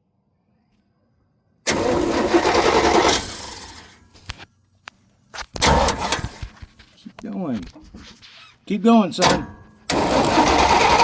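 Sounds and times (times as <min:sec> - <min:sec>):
starter motor cranking: 0:01.7 - 0:04.0, 0:05.6 - 0:06.4, 0:09.2 - 0:11.0.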